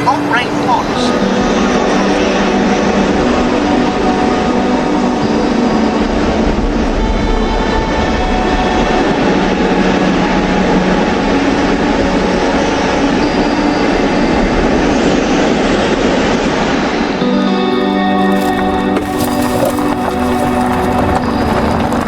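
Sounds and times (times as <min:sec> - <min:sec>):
vehicle rumbling: 0:16.1 - 0:22.0.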